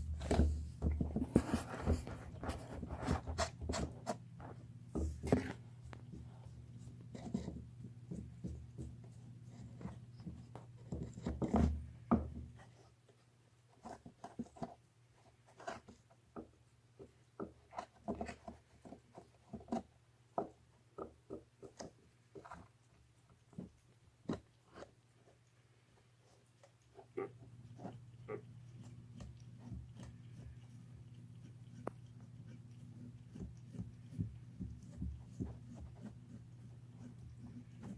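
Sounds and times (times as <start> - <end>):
cat gnawing on bone: 17.0 - 37.9.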